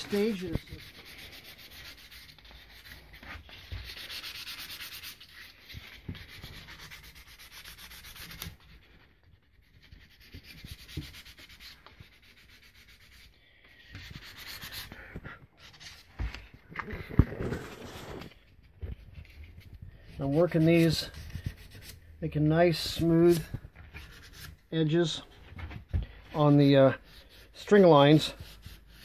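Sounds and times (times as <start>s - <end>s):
sandpaper rasping on horn: 0.0s - 8.9s, 9.7s - 13.3s, 14.0s - 15.0s, 20.1s - 22.0s, 26.4s - 29.0s.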